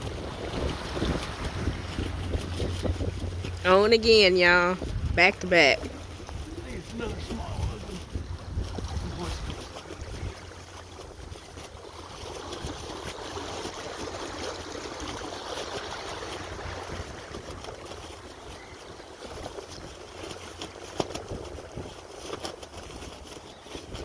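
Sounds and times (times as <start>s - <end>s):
water sloshing and trickling: 0.0s - 24.0s
wind rumbling on microphone: 0.0s - 24.0s.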